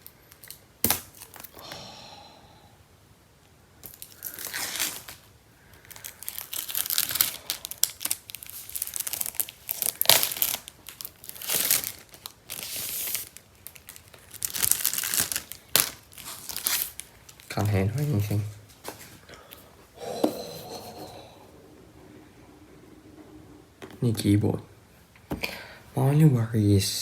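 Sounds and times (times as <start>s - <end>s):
packaging tearing and crinkling: 0.0s - 1.6s, 3.8s - 18.2s.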